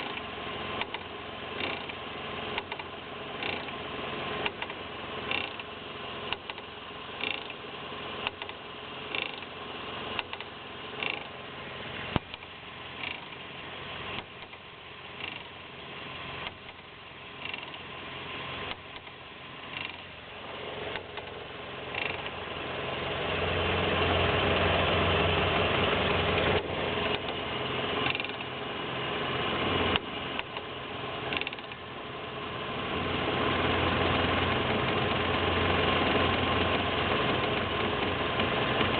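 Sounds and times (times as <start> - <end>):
car engine: 0.0 - 38.9
brakes chirping squeak: 1.6 - 2.0, 3.4 - 3.8, 5.3 - 5.7, 7.2 - 7.6, 9.1 - 9.5, 10.2 - 11.4, 13.0 - 13.4, 18.8 - 20.1, 20.9 - 22.4.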